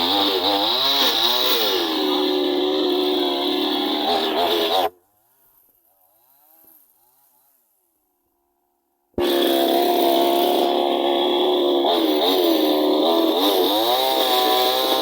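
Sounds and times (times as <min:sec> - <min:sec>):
chainsaw engine running: 0:00.0 - 0:04.9, 0:09.2 - 0:15.0.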